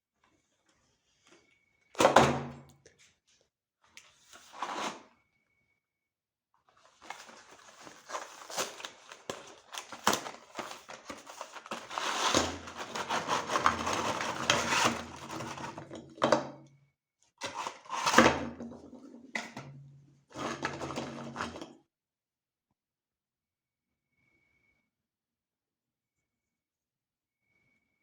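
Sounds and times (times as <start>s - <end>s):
grinder crushing cookies: 8.1s - 16.1s, 17.4s - 18.6s.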